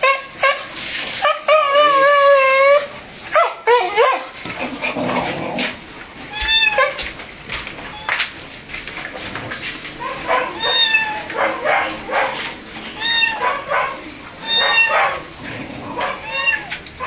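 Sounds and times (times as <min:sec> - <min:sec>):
cat meowing in distress: 0:06.3 - 0:07.0, 0:07.9 - 0:08.3, 0:10.5 - 0:11.4, 0:12.9 - 0:13.5, 0:14.4 - 0:15.2, 0:16.0 - 0:16.9.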